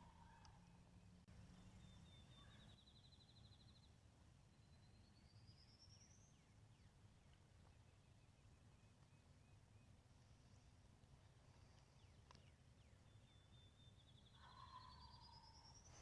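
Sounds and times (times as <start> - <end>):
songbird trills: 0.0 - 16.0
faint click: 11.7 - 12.5.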